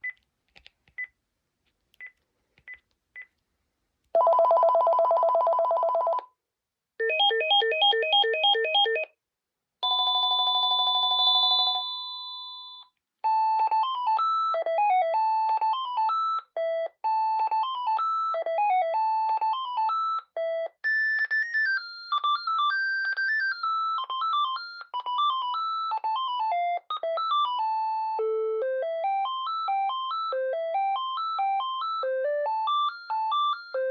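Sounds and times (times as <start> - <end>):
phone trilling ring: 4.2 - 6.2, 9.8 - 12.8
electronic melody ringtone: 7.0 - 9.1, 9.8 - 33.9.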